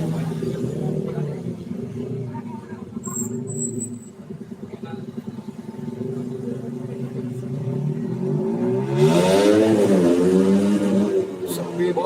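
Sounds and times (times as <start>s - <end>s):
bus engine revving: 5.8s - 12.0s.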